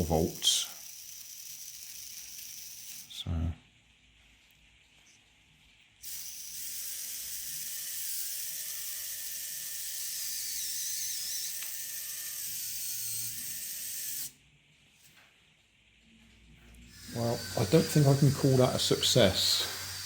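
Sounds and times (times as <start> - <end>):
toy car motors whirring: 0.0 - 3.2, 6.0 - 14.4, 16.9 - 20.0.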